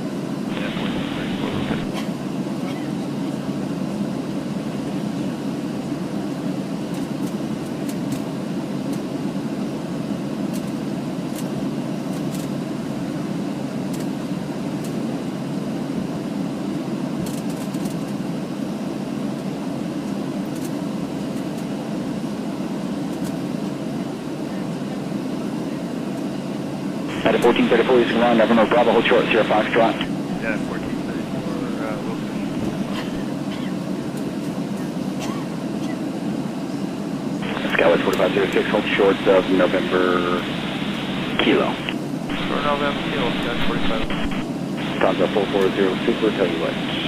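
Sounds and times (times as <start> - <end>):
airplane cabin rumble: 0.1 - 8.2, 23.0 - 47.0.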